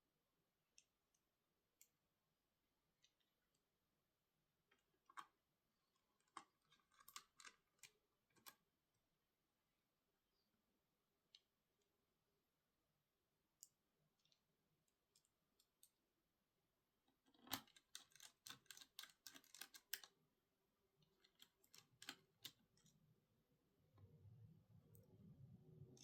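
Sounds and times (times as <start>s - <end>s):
small tools clicking and tapping: 6.2s - 8.6s, 17.2s - 20.1s.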